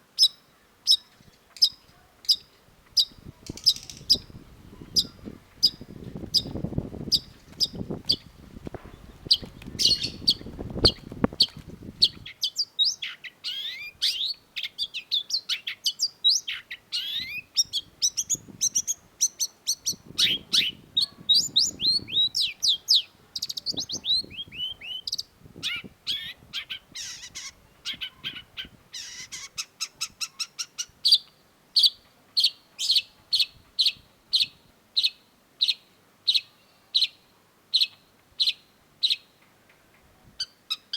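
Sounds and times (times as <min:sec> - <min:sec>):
bird singing chirps and whistles: 0:09.3 - 0:29.3.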